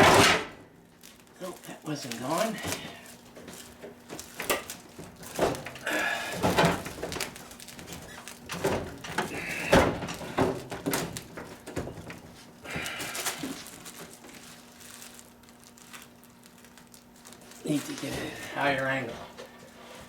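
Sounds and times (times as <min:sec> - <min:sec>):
heavy appliance thunking: 0:00.0 - 0:00.6, 0:08.5 - 0:13.1.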